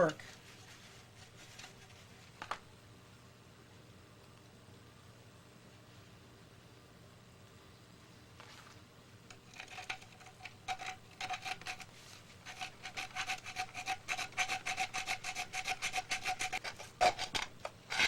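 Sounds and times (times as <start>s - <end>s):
hand file rasping on plastic: 9.4s - 17.3s.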